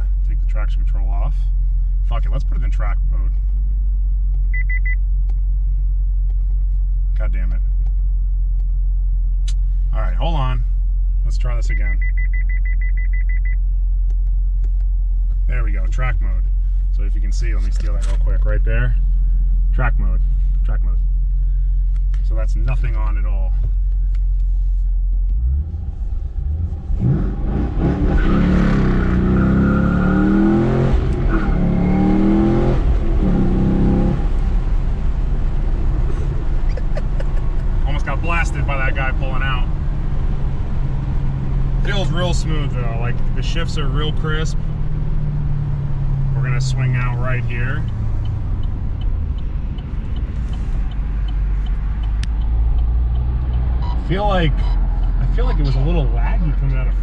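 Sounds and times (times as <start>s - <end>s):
road noise: 0.0s - 57.0s
sharp click: 9.4s - 9.6s
car engine accelerating hard: 25.2s - 57.0s
light even ticking: 47.0s - 55.7s.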